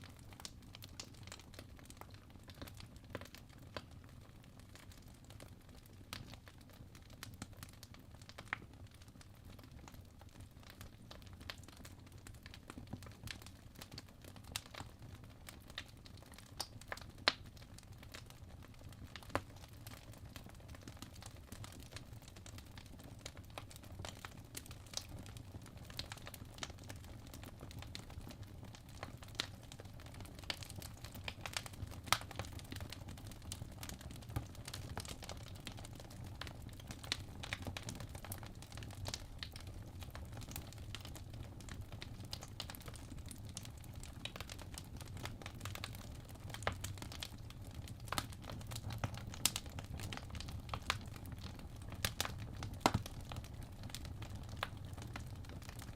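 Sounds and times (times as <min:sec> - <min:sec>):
fire crackling: 0:19.0 - 0:55.9.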